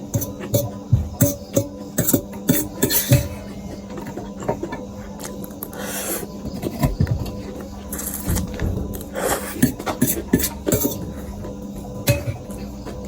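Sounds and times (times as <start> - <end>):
slurping noodles: 5.5 - 6.9, 7.9 - 11.4.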